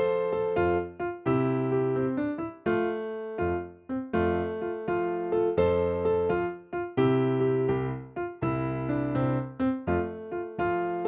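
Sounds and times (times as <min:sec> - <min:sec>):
piano chords: 0:00.0 - 0:11.0.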